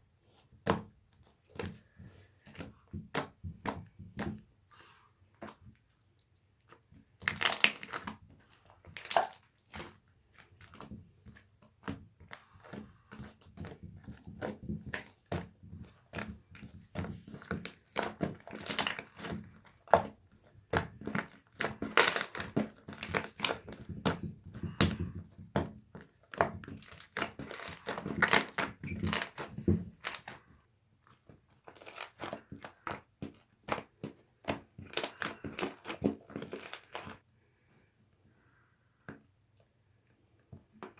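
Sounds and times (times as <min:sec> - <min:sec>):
slime crackling and popping: 0:07.2 - 0:10.8, 0:14.4 - 0:20.0, 0:20.7 - 0:30.5, 0:31.6 - 0:37.2.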